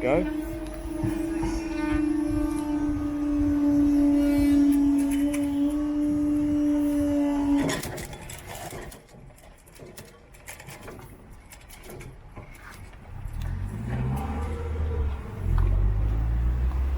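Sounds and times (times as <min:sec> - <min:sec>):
diesel train engine throttling up: 0:00.0 - 0:09.0, 0:12.2 - 0:16.9.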